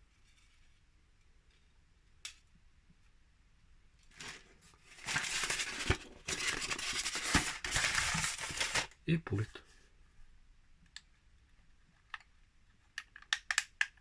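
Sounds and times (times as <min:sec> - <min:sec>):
plastic packaging crinkling: 0:04.1 - 0:09.0.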